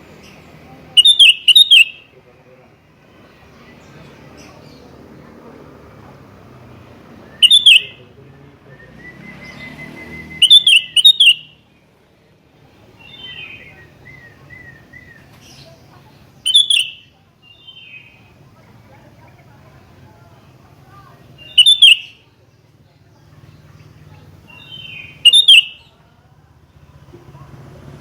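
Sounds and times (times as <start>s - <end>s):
bird calling in falling phrases: 0.9s - 2.0s, 7.3s - 8.0s, 9.2s - 11.5s, 16.4s - 18.4s, 21.4s - 22.2s, 24.4s - 25.9s.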